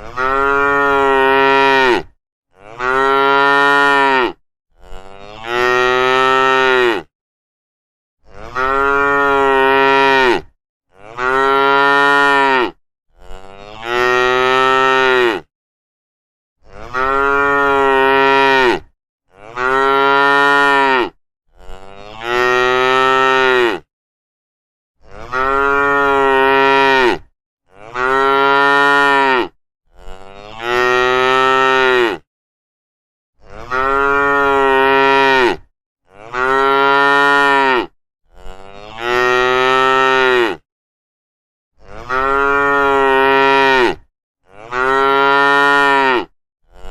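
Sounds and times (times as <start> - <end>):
cattle mooing: 0.0 - 7.1, 8.2 - 15.5, 16.6 - 23.8, 25.1 - 32.2, 33.4 - 40.6, 41.9 - 46.9.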